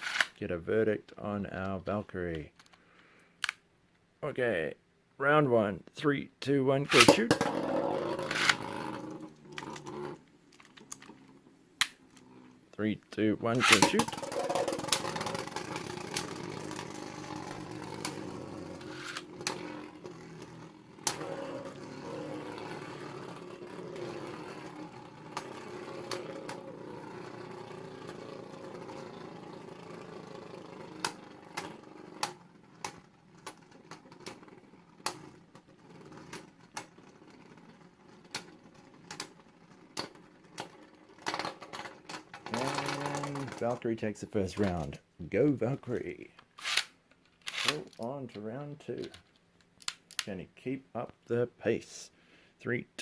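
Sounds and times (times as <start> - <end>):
spinning tops clacking together: 6.9 - 12.4, 13.5 - 43.8, 46.6 - 48.1
spinning tops whirring: 6.9 - 45.0, 46.5 - 48.2.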